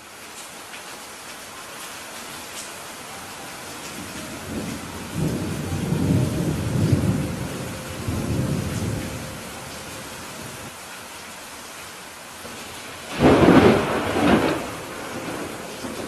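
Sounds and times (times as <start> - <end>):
heavy rain falling: 0.0 - 16.0
low roll of thunder: 3.9 - 10.7, 12.6 - 16.0.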